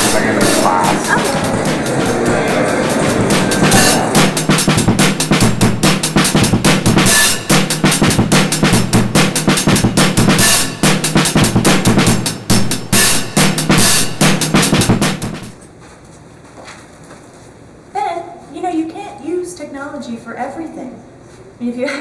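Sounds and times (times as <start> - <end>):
music with fast drum beat: 0.0 - 15.6.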